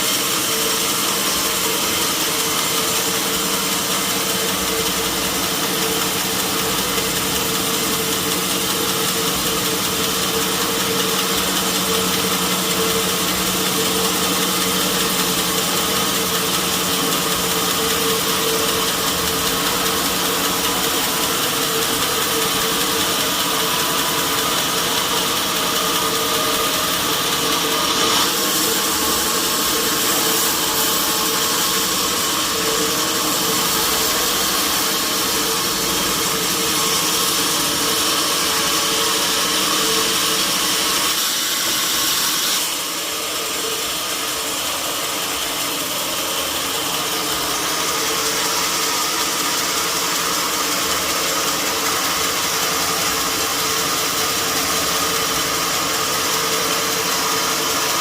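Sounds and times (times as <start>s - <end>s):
sawmill log saw running: 0.0s - 58.0s.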